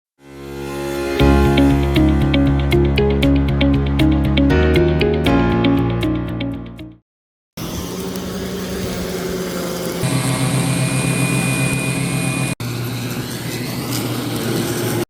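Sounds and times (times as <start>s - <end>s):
electric mower motor hum: 7.6s - 15.0s.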